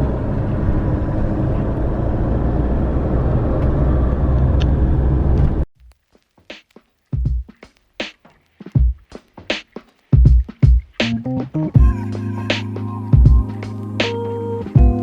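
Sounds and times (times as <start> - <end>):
road and engine rumble inside vehicle: 0.0 - 5.6.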